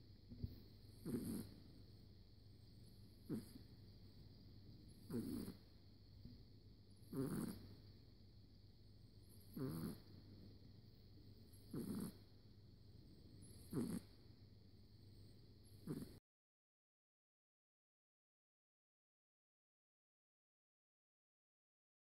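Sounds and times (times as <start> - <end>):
rattling snores: 0.9 - 1.6, 3.2 - 3.6, 5.0 - 5.6, 7.0 - 7.7, 9.4 - 10.1, 11.7 - 12.2, 13.4 - 14.1, 15.8 - 16.2.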